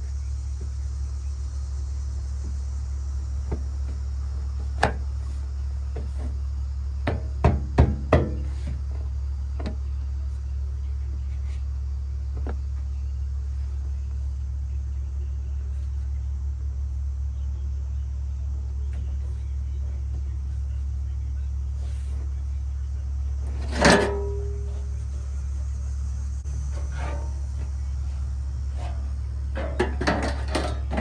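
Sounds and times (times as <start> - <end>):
steady low hum: 0.0 - 31.0
tools knocking on sheet metal: 7.1 - 8.6.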